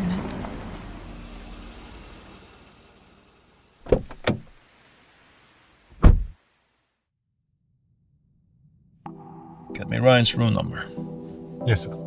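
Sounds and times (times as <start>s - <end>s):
low car rumble: 0.0s - 3.8s
car door shutting: 3.8s - 4.5s, 6.0s - 6.4s.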